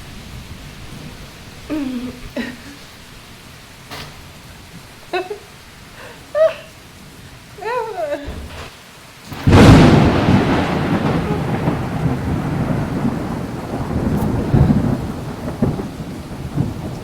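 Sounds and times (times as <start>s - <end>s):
loud thunderclap: 0.0s - 2.4s, 8.2s - 17.0s
rolling thunder rumble: 0.0s - 17.0s
steady rain: 0.0s - 17.0s.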